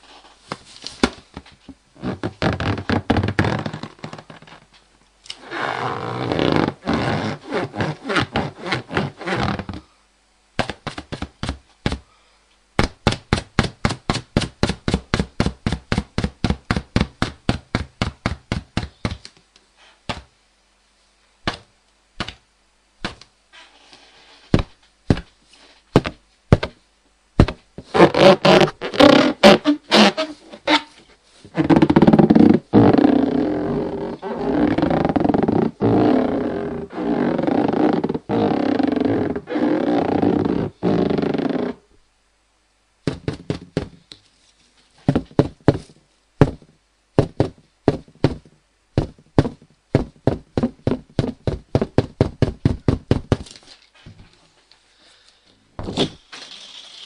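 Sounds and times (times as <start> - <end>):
rubber balloon squeaking: 2.0 - 4.7, 5.4 - 9.9, 27.4 - 41.9, 45.1 - 53.4, 55.8 - 57.0.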